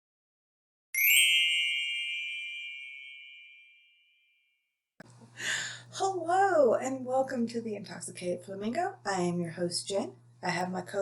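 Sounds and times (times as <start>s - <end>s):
bell-like chime ringing: 1.0s - 4.5s.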